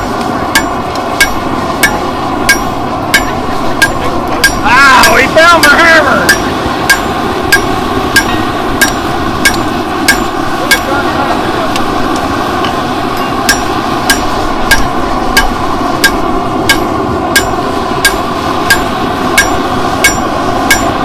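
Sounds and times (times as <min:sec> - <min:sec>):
hammer on hot steel ringing: 0:00.0 - 0:21.0
steady background noise: 0:00.0 - 0:21.0.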